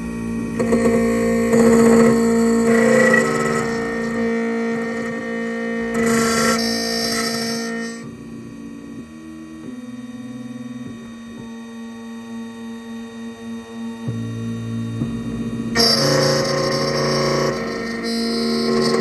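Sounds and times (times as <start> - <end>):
key machine spindle whining: 0.6 - 8.0.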